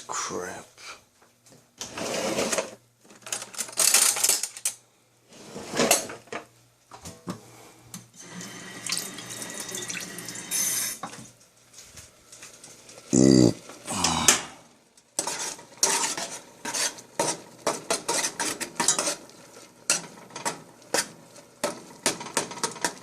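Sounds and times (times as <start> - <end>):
kitchen tap water running: 8.2 - 11.1.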